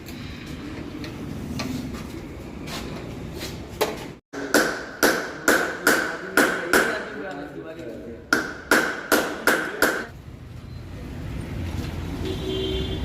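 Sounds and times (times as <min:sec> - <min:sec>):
hammer striking metal: 0:04.4 - 0:07.1, 0:08.3 - 0:10.1.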